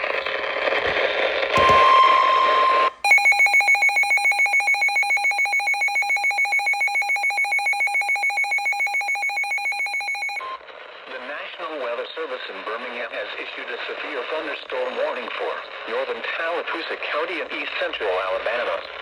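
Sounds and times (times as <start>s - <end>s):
high electronic alert beep: 1.6s - 10.4s.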